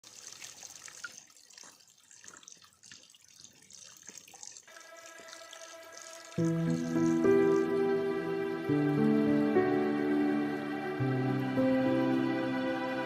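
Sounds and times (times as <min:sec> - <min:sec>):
water dripping and splashing: 0:00.0 - 0:08.2.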